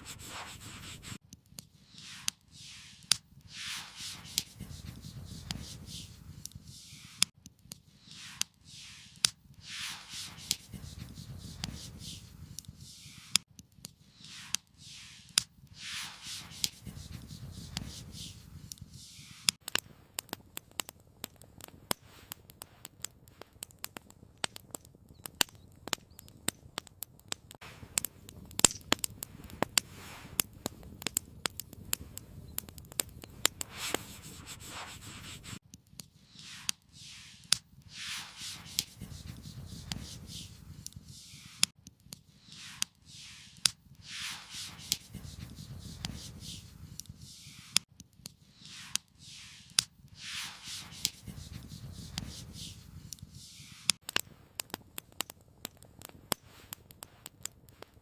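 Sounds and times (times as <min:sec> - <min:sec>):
scraping rubbing strokes: 0:00.0 - 0:01.2, 0:01.8 - 0:07.3, 0:08.0 - 0:13.4, 0:14.1 - 0:19.6, 0:33.4 - 0:35.6, 0:36.3 - 0:41.7, 0:42.4 - 0:47.8, 0:48.5 - 0:54.0
campfire crackling: 0:00.2 - 0:58.0.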